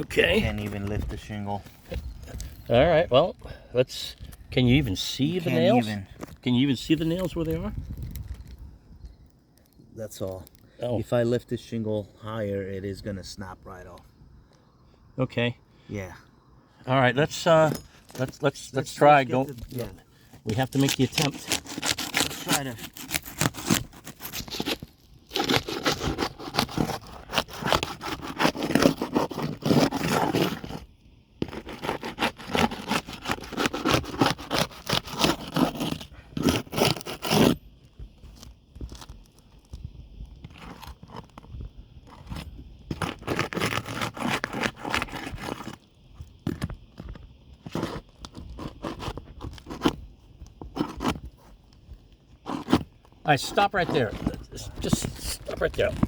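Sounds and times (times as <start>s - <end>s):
tool scraping under shingles: 4.2s - 8.6s, 17.2s - 56.0s
shingles crackling: 17.2s - 30.8s, 31.4s - 56.0s.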